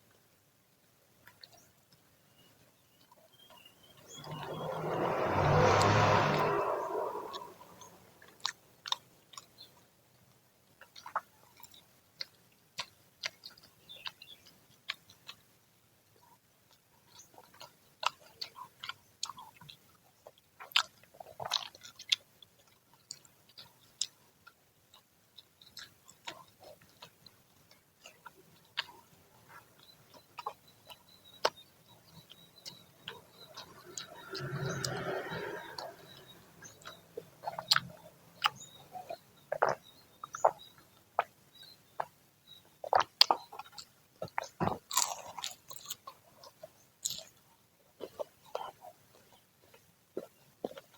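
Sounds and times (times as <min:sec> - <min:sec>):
crunchy food being chewed: 0:01.2 - 0:50.9.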